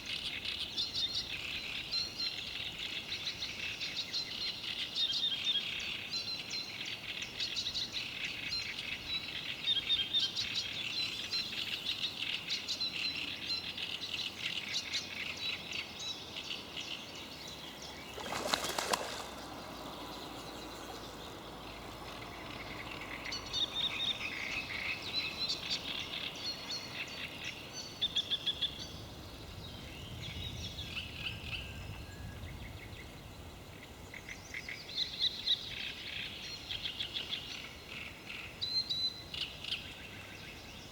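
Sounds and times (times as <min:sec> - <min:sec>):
songbirds chirping: 0:00.0 - 0:40.9.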